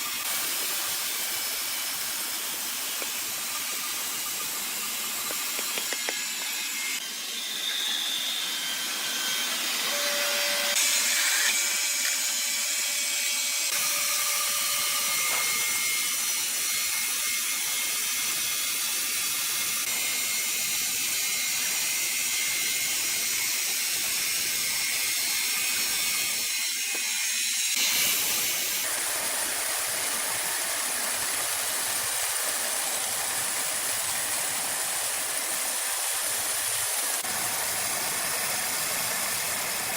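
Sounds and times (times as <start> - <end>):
sawmill saws cutting wood: 0.0 - 39.9.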